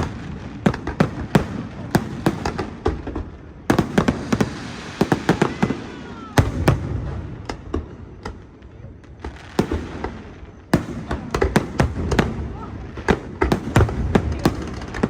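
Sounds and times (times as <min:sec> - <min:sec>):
fireworks bangs: 0:00.0 - 0:15.0
fireworks whistles gliding down: 0:03.7 - 0:13.0.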